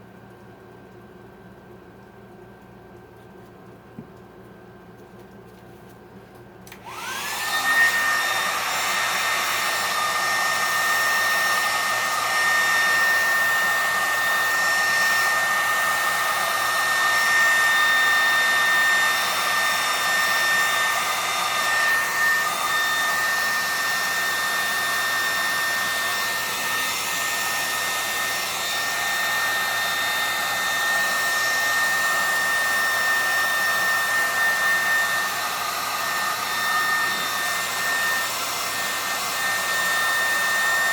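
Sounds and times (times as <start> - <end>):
hair dryer running: 6.6 - 40.9.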